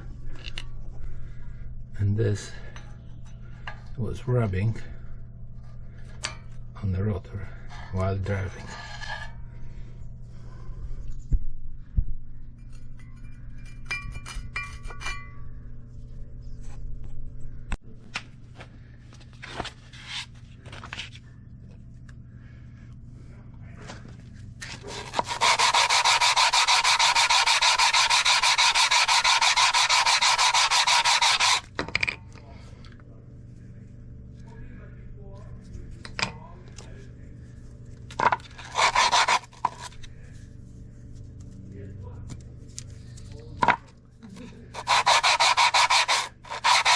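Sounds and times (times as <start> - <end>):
tools clinking and knocking: 12.6 - 15.4, 31.8 - 32.4.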